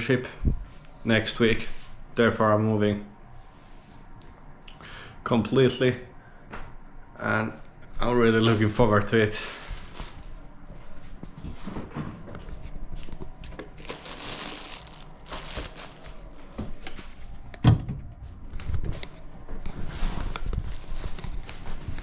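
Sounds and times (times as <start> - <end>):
rustling and crinkling: 8.4 - 22.0.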